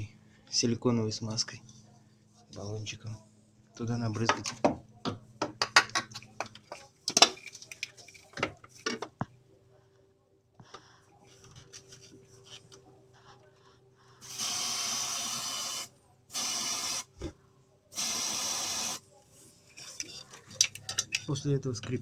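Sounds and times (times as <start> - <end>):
irregular clicks and knocks: 4.2 - 9.3
aerosol spray hissing: 14.2 - 17.3, 17.9 - 19.1.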